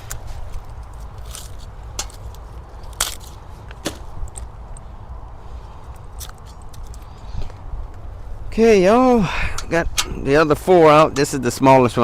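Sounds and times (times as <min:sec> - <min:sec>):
plant stems snapping and crackling: 0:00.0 - 0:04.5, 0:06.0 - 0:07.1.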